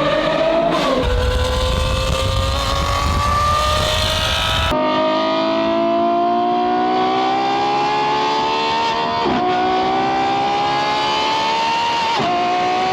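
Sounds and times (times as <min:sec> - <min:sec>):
car engine accelerating hard: 0:00.0 - 0:12.9.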